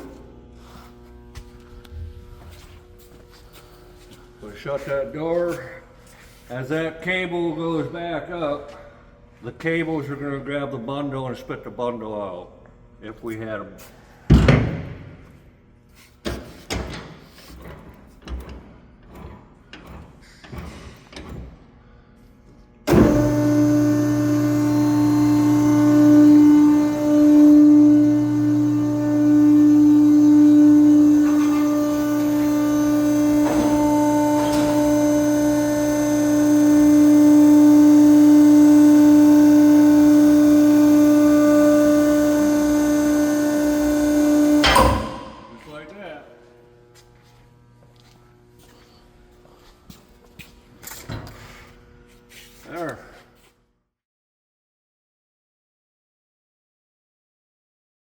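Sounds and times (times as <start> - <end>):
hydraulic pump motor humming: 22.8 - 45.8
metal clunks and knocks: 44.6 - 45.4.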